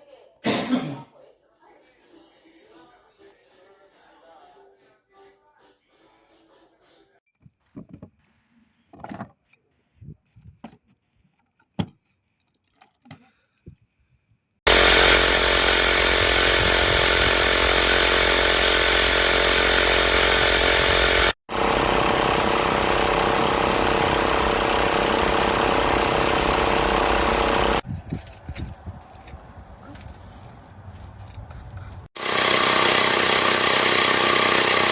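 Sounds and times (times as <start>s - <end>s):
air compressor running: 14.7s - 27.8s, 32.1s - 34.9s.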